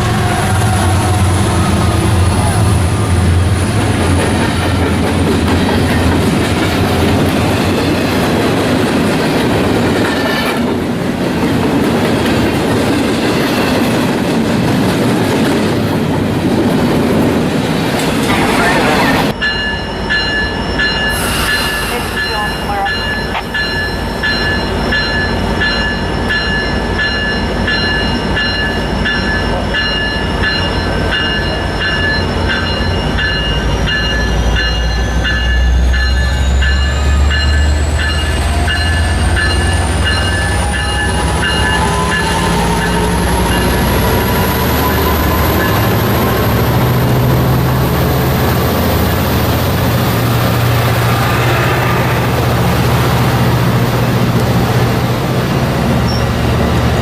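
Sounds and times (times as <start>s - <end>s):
locomotive engine rumble and whine: 0.0s - 11.2s, 16.2s - 57.0s
crossing bell ringing: 18.3s - 54.2s.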